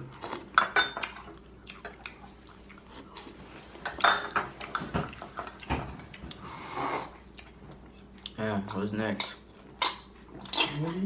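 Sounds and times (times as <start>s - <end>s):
chewing: 0.1s - 4.0s, 4.6s - 8.4s
cutlery clinking on dishes: 3.8s - 5.9s.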